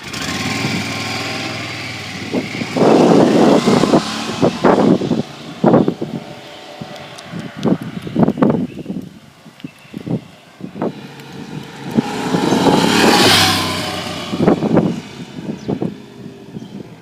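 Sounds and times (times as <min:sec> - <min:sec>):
motorcycle riding past: 0:00.0 - 0:07.8, 0:10.8 - 0:17.0.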